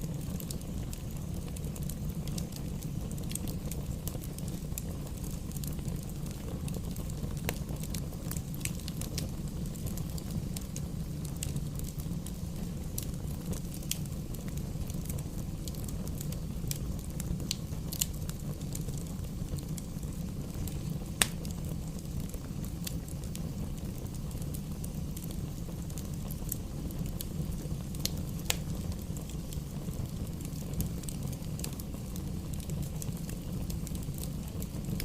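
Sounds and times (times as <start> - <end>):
fire popping and snapping: 0.0 - 35.0
wood fire crackling: 0.0 - 35.0.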